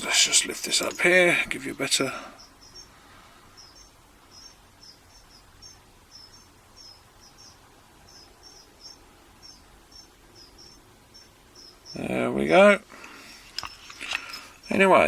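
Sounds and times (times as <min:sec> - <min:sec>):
small animal chirping: 0:02.4 - 0:03.0, 0:03.6 - 0:12.6.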